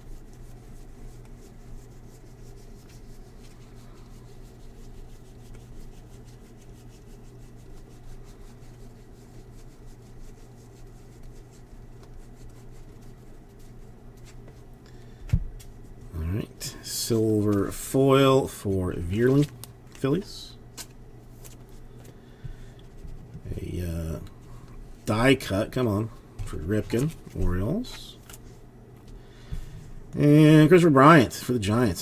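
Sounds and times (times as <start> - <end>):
steady low hum: 0.0 - 32.0
cards flipped through by hand: 19.0 - 20.0, 20.7 - 22.2, 26.4 - 29.2.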